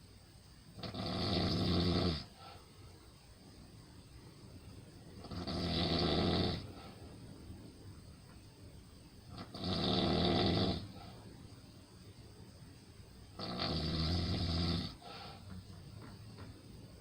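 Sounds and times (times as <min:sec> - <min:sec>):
quiet breathing: 0:00.0 - 0:17.0
person snoring: 0:09.3 - 0:11.0, 0:13.4 - 0:15.1.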